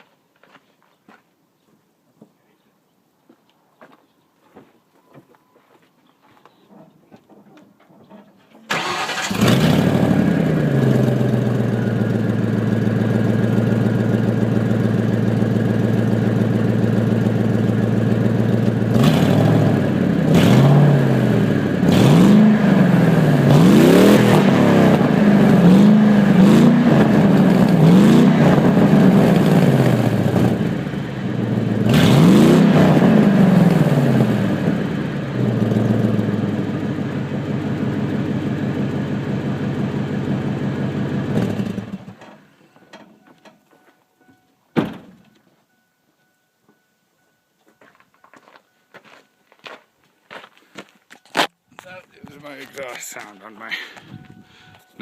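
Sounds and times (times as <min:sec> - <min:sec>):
truck engine starting and revving: 0:08.7 - 0:42.5.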